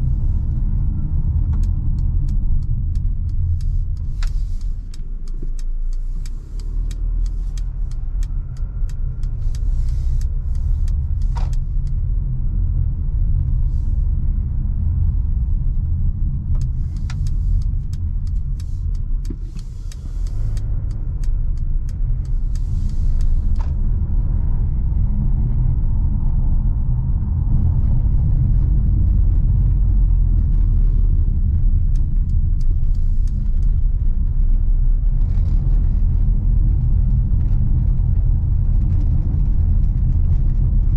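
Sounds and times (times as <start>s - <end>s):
light ticks: 0.0s - 12.3s, 14.9s - 24.0s, 30.3s - 40.9s
car engine and road noise: 0.0s - 40.9s.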